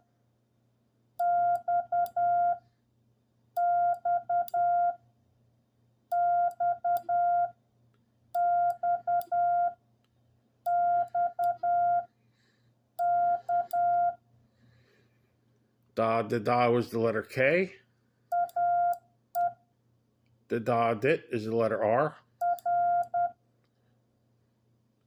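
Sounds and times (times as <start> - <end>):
morse code beeps: 1.2 - 2.6, 3.6 - 5.0, 6.1 - 7.5, 8.4 - 9.8, 10.7 - 12.1, 13.0 - 14.2, 18.3 - 19.6, 22.4 - 23.4.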